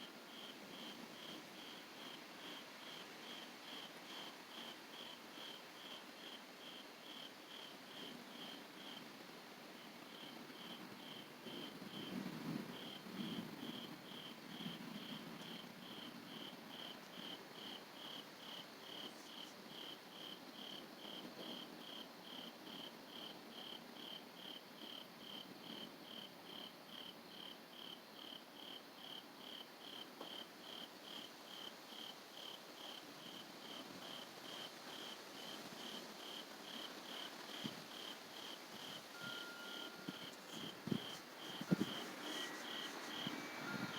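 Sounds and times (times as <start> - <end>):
insect chirping: 36.2 - 43.9.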